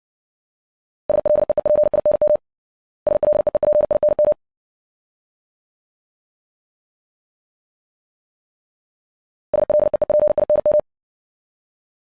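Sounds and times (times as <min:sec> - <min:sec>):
morse code beeps: 0:01.1 - 0:02.4, 0:03.1 - 0:04.4, 0:09.6 - 0:10.8.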